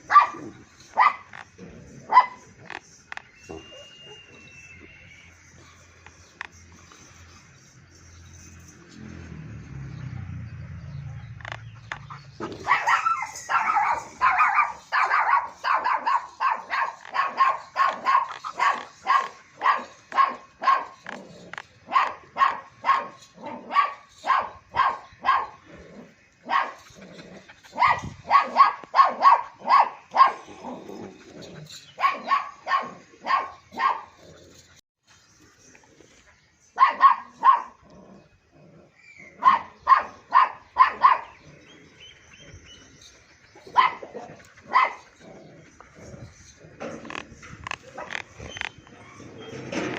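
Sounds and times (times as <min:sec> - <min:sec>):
dog barking: 0:00.0 - 0:01.3, 0:02.0 - 0:02.5, 0:12.6 - 0:21.2, 0:21.9 - 0:25.6, 0:26.4 - 0:26.8, 0:27.7 - 0:30.5, 0:32.0 - 0:34.2, 0:36.8 - 0:37.8, 0:39.4 - 0:41.4, 0:43.7 - 0:45.0.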